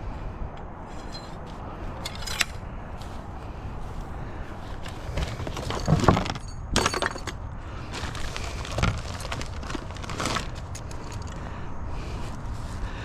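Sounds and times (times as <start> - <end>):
hard objects knocking and clattering: 5.1 - 7.4.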